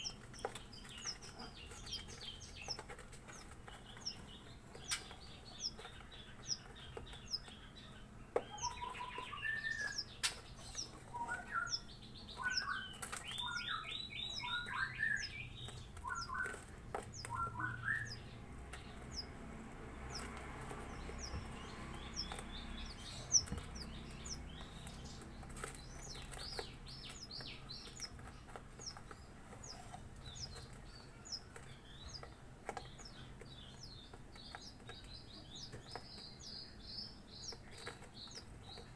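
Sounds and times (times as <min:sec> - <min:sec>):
lower varied bird calls: 0:00.0 - 0:19.4
fast ticking bird trill: 0:00.0 - 0:38.9
high bird chirps: 0:00.0 - 0:38.9.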